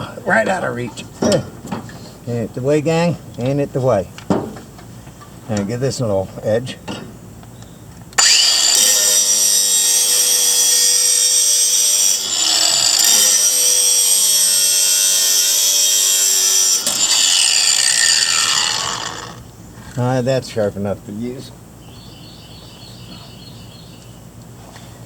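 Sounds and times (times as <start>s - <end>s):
angle grinder grinding steel: 8.2s - 19.4s.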